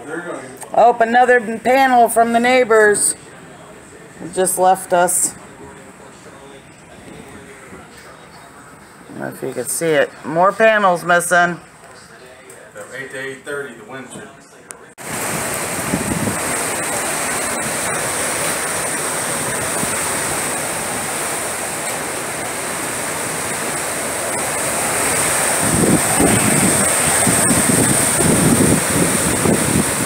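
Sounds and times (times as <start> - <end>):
strong wind rushing: 15.0 - 21.6, 23.1 - 30.0
wind gusts buffeting microphone: 15.0 - 30.0.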